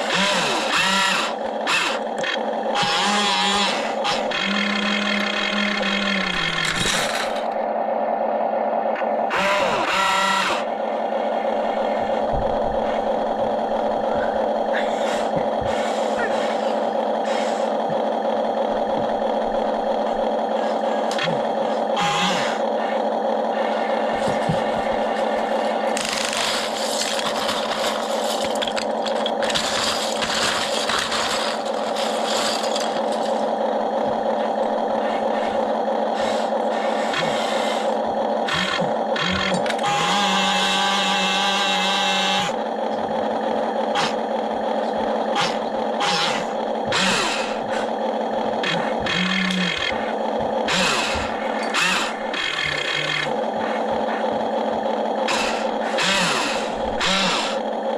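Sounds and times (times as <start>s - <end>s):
toy excavator motors whining: 0.0s - 57.9s
plastic bricks scraping and rattling: 1.9s - 7.6s, 23.7s - 35.7s.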